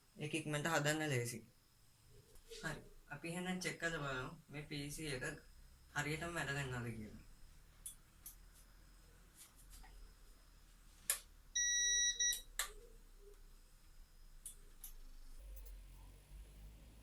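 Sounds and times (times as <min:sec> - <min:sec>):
computer short beep: 0:11.6 - 0:12.4.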